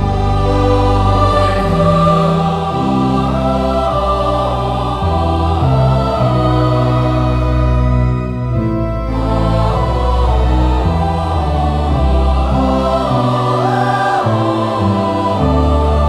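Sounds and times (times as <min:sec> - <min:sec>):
choir singing a hymn: 0:00.0 - 0:16.0
low accompaniment: 0:00.0 - 0:16.0.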